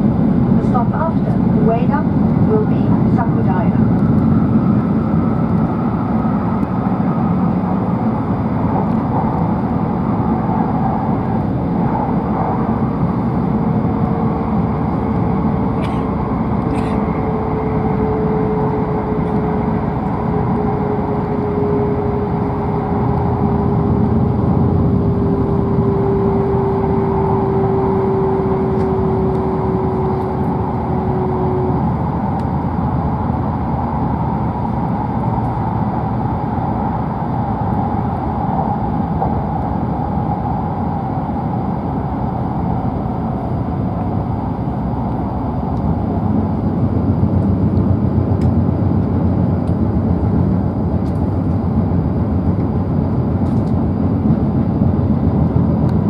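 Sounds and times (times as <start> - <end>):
train cabin rumble: 0.0 - 56.0
humming tone sinking in pitch: 10.0 - 47.3.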